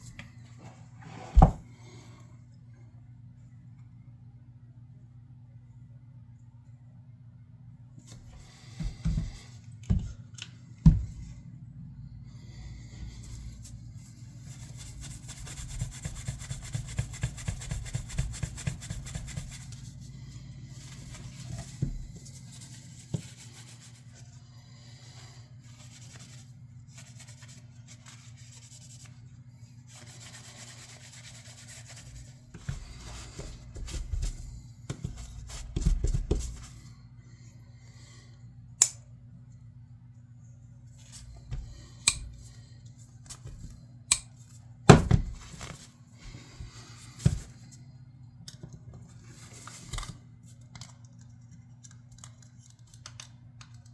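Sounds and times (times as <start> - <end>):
rubbing or scraping strokes: 0.6 - 1.6, 29.8 - 35.8.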